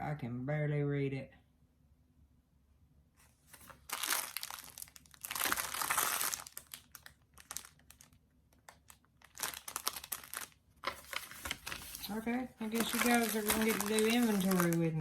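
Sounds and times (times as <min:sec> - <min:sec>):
plastic packaging crinkling: 0:03.5 - 0:15.0.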